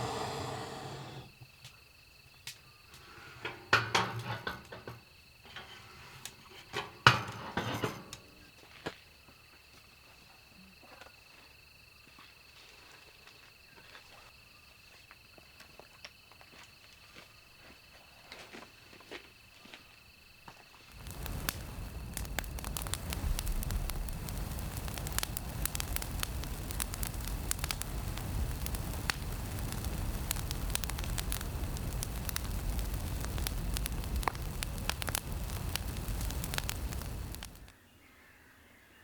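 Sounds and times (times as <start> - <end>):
campfire crackling: 0.0 - 1.4, 20.9 - 37.7.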